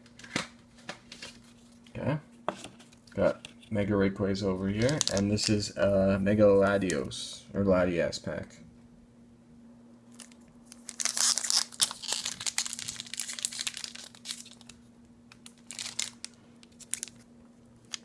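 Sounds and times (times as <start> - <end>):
foil wrappers crinkling: 4.7 - 5.6, 10.1 - 18.0.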